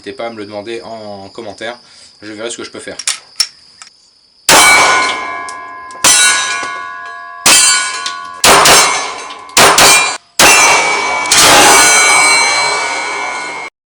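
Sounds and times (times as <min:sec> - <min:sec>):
loud metallic clangs ringing: 0:04.5 - 0:13.7.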